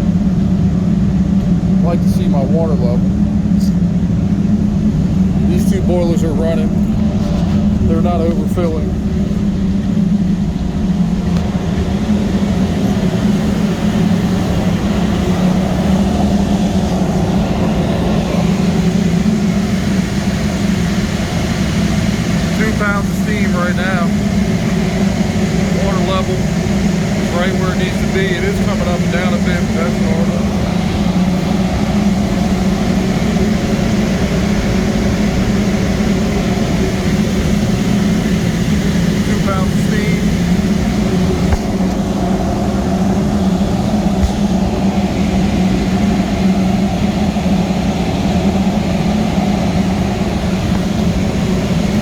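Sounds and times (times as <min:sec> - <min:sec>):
boiler burners humming: 0:00.0 - 0:52.0
even rushing noise: 0:00.0 - 0:52.0.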